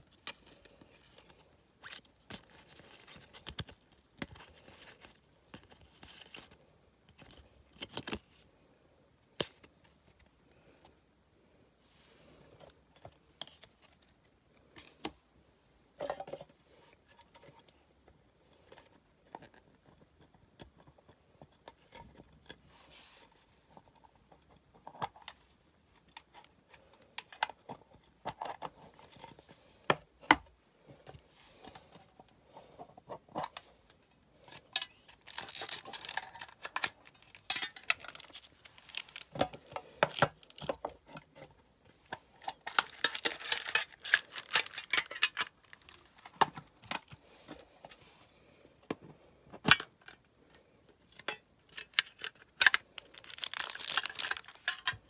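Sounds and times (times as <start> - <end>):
cards clicking and rustling: 34.8 - 40.9, 42.2 - 47.2, 51.7 - 55.0
packet wrapper crinkling: 35.1 - 40.8, 42.4 - 47.1, 51.9 - 55.0.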